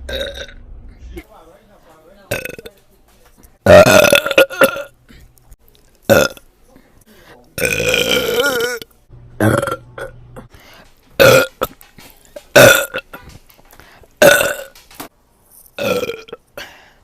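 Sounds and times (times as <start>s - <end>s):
woman burping: 3.6s - 5.0s, 7.6s - 10.5s, 12.5s - 13.3s, 14.2s - 14.7s, 15.8s - 16.4s.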